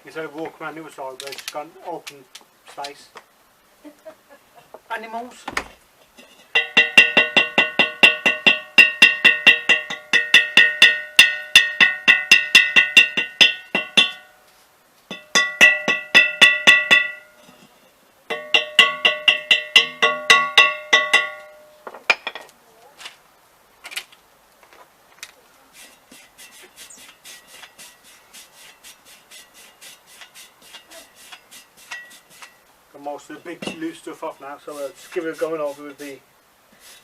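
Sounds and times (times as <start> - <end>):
hand scraping ringing metal wheel: 6.2 - 21.8, 25.8 - 32.6, 33.2 - 36.2.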